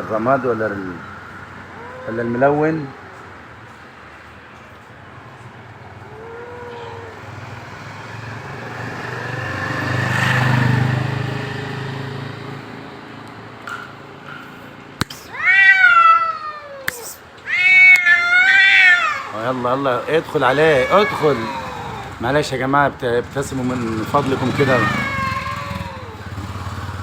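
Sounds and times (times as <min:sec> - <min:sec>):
cats yowling: 0:01.6 - 0:03.8, 0:05.9 - 0:07.6, 0:15.3 - 0:22.5, 0:23.8 - 0:26.4
cats growling: 0:01.7 - 0:03.3, 0:06.0 - 0:07.5, 0:15.3 - 0:22.3, 0:23.4 - 0:26.7.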